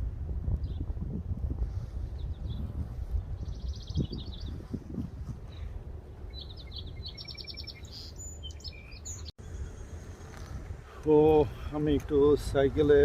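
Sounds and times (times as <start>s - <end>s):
steady low rumble: 0.0s - 7.3s
songbirds trilling and chirping: 2.1s - 12.1s.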